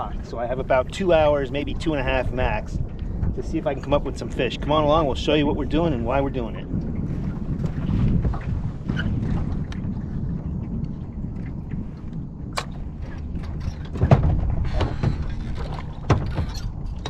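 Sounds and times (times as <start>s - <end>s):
water noise around boat: 0.0s - 17.0s
wind rumble: 0.0s - 17.0s
sharp knocks: 13.9s - 17.0s.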